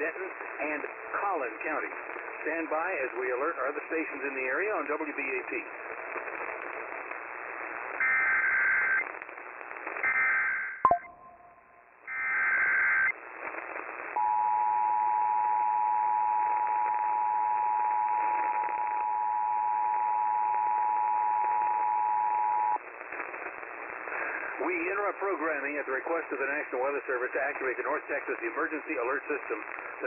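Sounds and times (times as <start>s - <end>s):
radio hiss: 0.0s - 10.4s, 12.1s - 14.3s, 20.6s - 30.0s
data tone bursts: 10.1s - 11.6s
two-tone attention signal: 10.9s - 11.6s.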